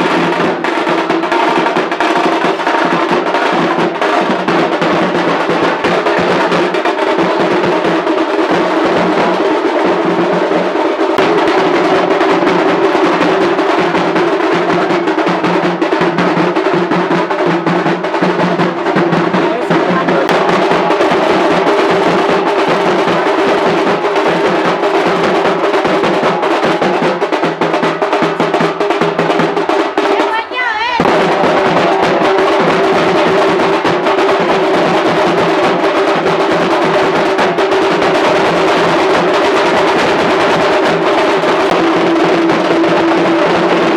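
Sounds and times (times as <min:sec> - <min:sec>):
fast dense drumming: 0:00.0 - 0:43.9.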